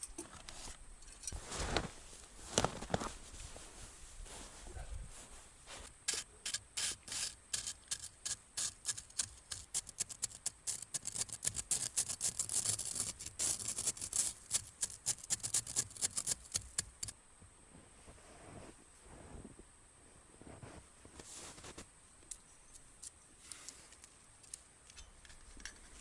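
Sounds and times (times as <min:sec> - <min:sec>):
tool rasping on hard surface: 0:06.1 - 0:17.1.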